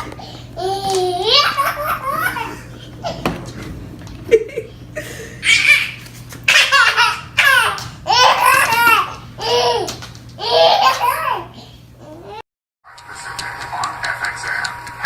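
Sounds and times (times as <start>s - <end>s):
baby laughing: 0.6s - 3.2s, 4.3s - 11.5s.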